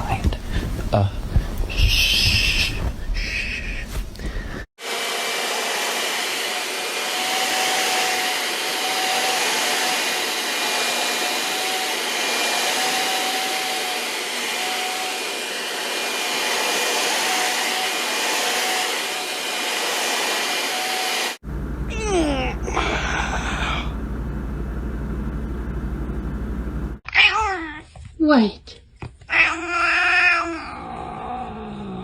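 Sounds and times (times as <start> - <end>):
faint high hum: 21.5 - 27.0.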